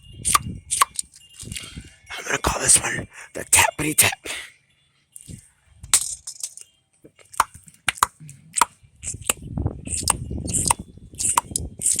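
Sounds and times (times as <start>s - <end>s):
person clicking and tapping: 5.9s - 9.4s, 10.0s - 12.0s.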